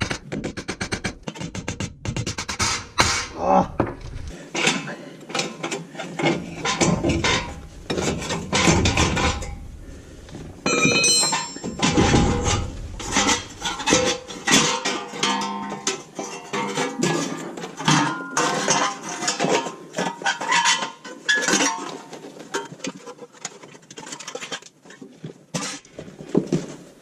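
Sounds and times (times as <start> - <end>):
hammer striking steel hub: 10.7 - 12.2.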